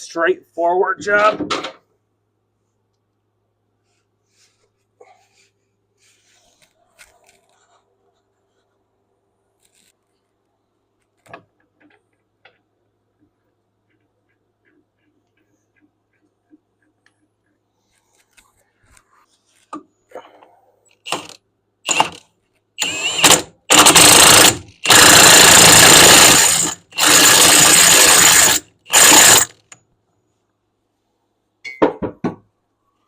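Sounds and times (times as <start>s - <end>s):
impact wrench hammering: 22.8s - 29.7s.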